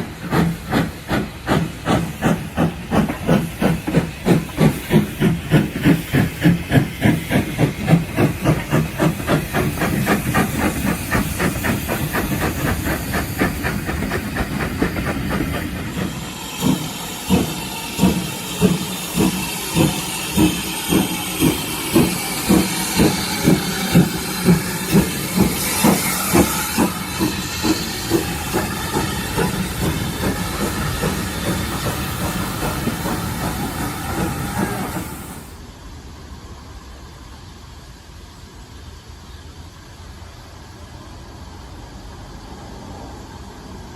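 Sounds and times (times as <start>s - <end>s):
steam locomotive chuffing: 0.0s - 36.2s
steam hissing: 0.0s - 39.1s.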